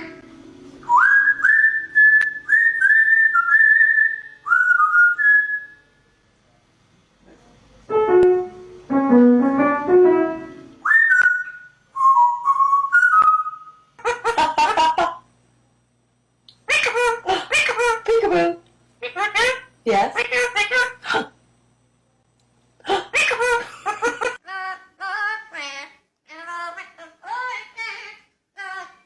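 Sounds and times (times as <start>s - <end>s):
pet bird whistling: 0.9s - 5.8s, 10.8s - 13.8s.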